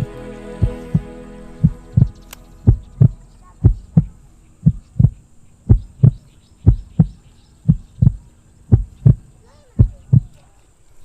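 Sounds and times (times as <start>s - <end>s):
heartbeat thumps: 1.6s - 10.3s.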